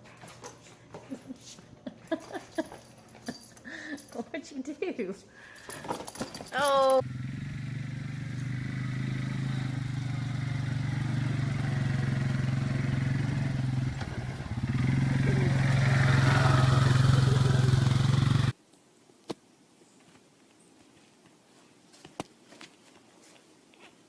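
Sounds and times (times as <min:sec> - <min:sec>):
engine humming: 0:06.7 - 0:18.5.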